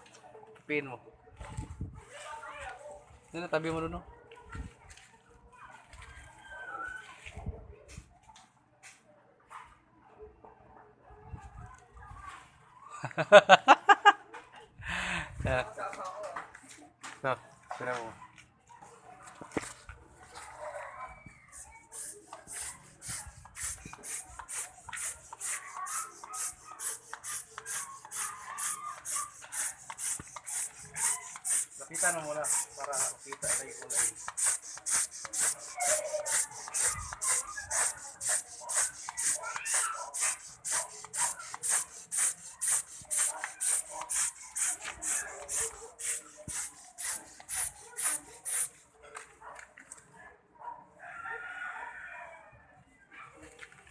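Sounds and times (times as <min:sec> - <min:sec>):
sandpaper scraping strokes: 0:21.5 - 0:48.8
spray can hissing bursts: 0:21.5 - 0:48.8.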